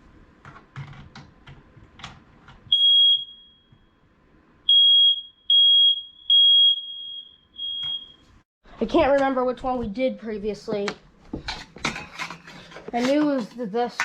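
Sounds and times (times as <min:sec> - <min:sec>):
smoke alarm beeping: 0:02.7 - 0:03.9, 0:04.7 - 0:08.4.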